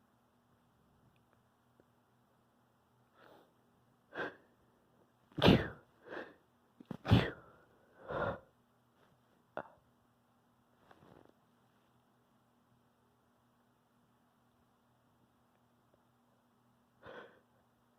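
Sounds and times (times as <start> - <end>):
person breathing: 3.1 - 4.8, 5.5 - 6.5, 7.2 - 8.6, 17.0 - 17.6
person sneezing: 5.3 - 6.2, 6.9 - 7.5.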